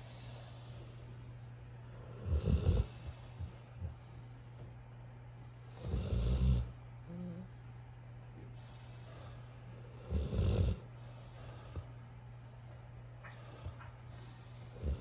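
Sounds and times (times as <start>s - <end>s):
puppy snoring: 2.0s - 4.1s, 5.7s - 7.6s, 8.6s - 12.0s, 13.2s - 15.0s.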